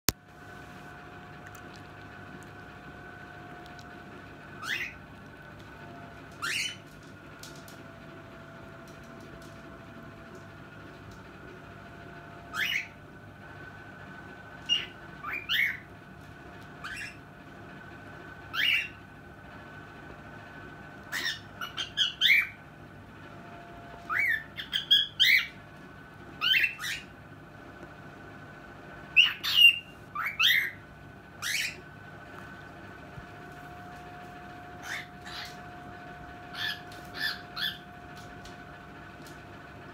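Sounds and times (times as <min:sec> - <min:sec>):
faint steady hum: 0:00.1 - 0:39.9
cockatiel calling: 0:04.6 - 0:05.0, 0:06.4 - 0:06.9, 0:12.5 - 0:13.0, 0:14.7 - 0:15.9, 0:16.8 - 0:17.2, 0:18.5 - 0:19.0, 0:21.1 - 0:22.6, 0:24.0 - 0:25.6, 0:26.4 - 0:27.1, 0:29.1 - 0:30.8, 0:31.4 - 0:31.8, 0:34.7 - 0:38.3.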